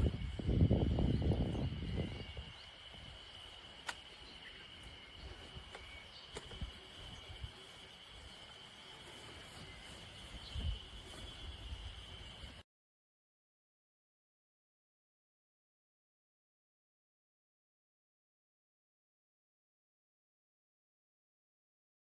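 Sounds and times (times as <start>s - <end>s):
high-pitched insect chirring: 0.0s - 12.6s
faint clicks: 3.8s - 4.2s.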